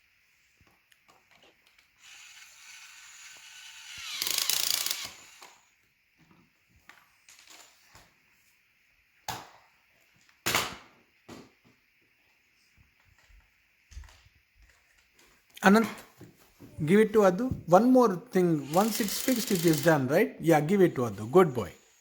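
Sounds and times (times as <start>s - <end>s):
screwdriver whirring and ratcheting: 1.6s - 5.8s, 18.6s - 20.1s.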